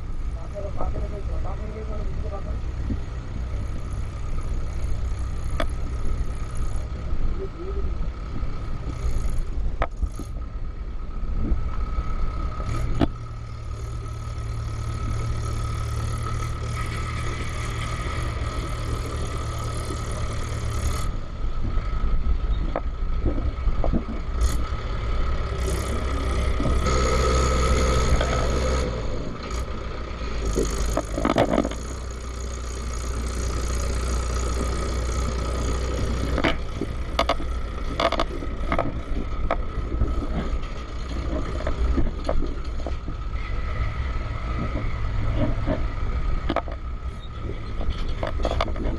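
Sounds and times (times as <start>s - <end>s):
vehicle engine running: 0.0s - 48.9s
knocks and rattles: 30.5s - 31.9s, 36.3s - 43.2s.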